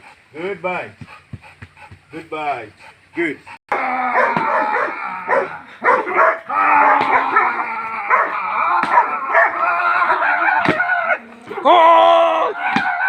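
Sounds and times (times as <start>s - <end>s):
dog barking and whining: 4.1s - 11.3s.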